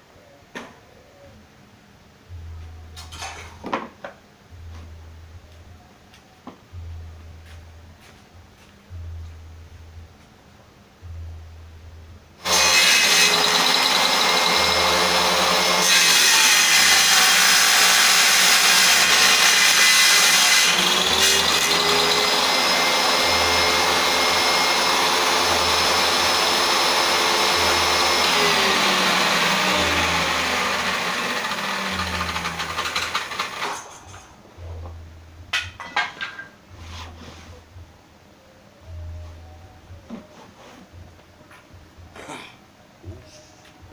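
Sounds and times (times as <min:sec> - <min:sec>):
table saw running: 0:12.4 - 0:33.9.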